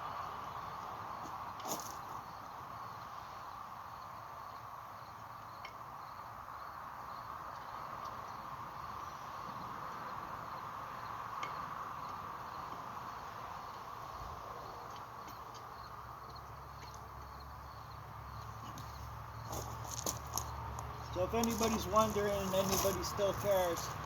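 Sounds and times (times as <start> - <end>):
insects chirring: 0.4 - 24.0.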